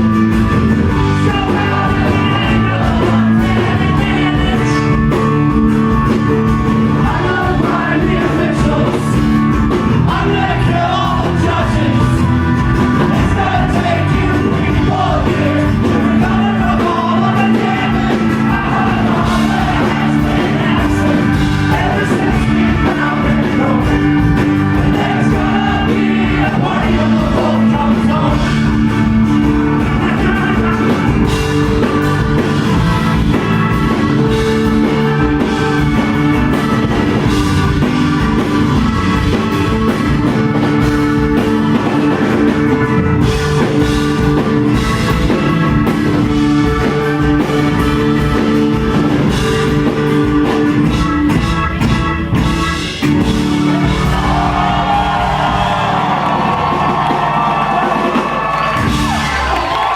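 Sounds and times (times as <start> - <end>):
live rock band playing: 0.0 - 59.9
person singing: 0.9 - 5.4, 6.8 - 12.4, 13.0 - 32.0.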